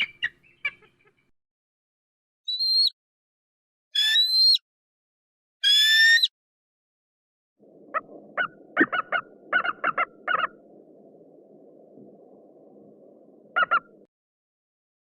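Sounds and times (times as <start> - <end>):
faint steady hiss: 7.6 - 14.1
large bird calling: 7.8 - 10.8, 13.4 - 14.1.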